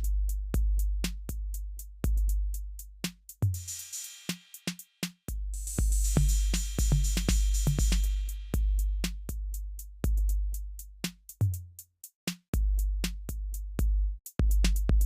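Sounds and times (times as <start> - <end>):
deep bass: 0.0 - 2.9, 5.3 - 10.8, 12.6 - 15.0
electronic music with drum machine: 5.6 - 8.7.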